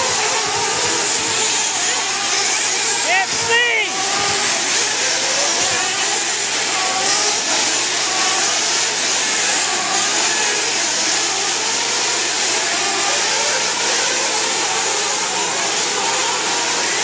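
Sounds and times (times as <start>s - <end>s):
small model engines revving: 0.0s - 17.0s.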